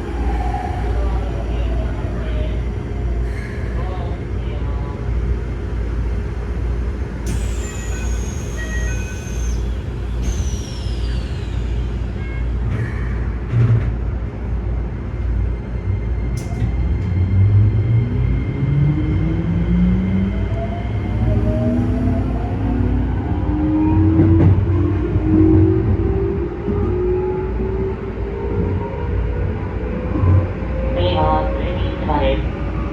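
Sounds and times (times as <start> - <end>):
electric train motors rumbling: 0.0 - 32.9
high whines gliding down: 7.6 - 13.4.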